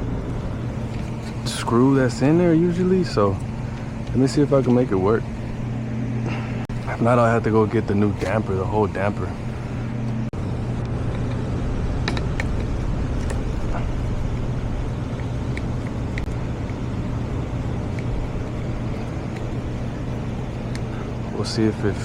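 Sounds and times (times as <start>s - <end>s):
hvac system humming: 0.0s - 22.0s.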